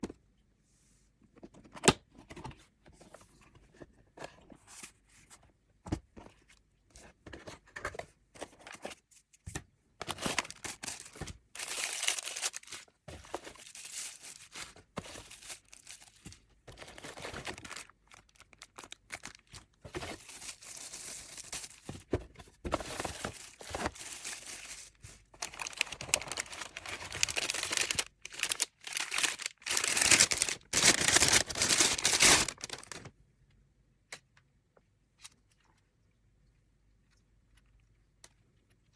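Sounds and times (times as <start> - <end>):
paper and plastic wrapping tearing: 10.0 - 12.9, 22.8 - 33.1.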